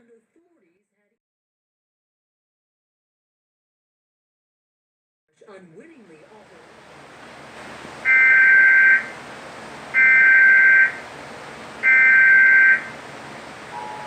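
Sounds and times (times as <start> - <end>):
warbling data tones: 8.0 - 9.2, 9.9 - 11.1, 11.8 - 13.0.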